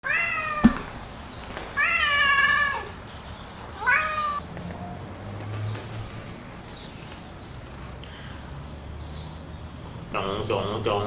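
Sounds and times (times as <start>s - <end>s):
cat meowing: 0.0s - 0.9s, 1.8s - 3.0s, 3.8s - 4.4s
sharp click: 0.6s - 1.0s.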